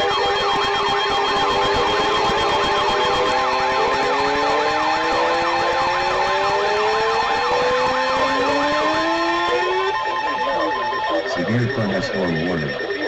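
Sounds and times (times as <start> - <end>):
siren-like electronic sweeps: 0.0 - 13.0
electronic alert tones: 7.3 - 13.0.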